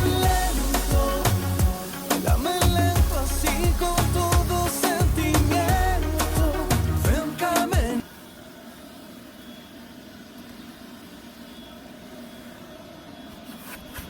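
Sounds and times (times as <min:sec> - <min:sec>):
background music: 0:00.0 - 0:08.0.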